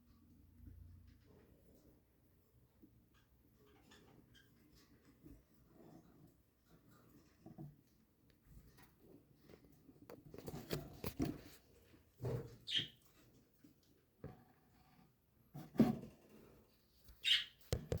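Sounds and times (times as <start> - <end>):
harsh high-pitched bird cries: 12.7 - 13.0, 17.2 - 17.6.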